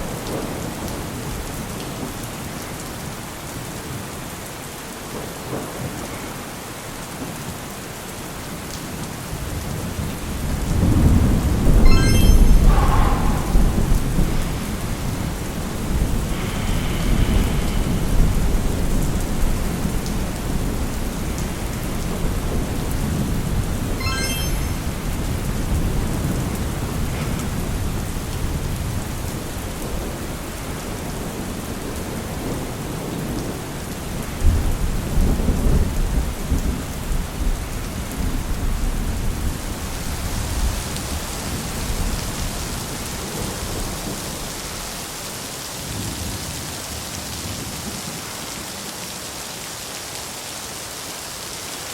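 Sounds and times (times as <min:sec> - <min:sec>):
steady rain: 0:00.0 - 0:51.9
thunder rumbling: 0:12.6 - 0:20.9.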